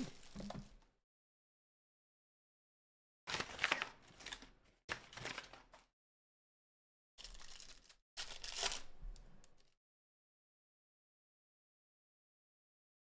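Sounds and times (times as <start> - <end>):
packaging tearing and crinkling: 7.2 - 8.9.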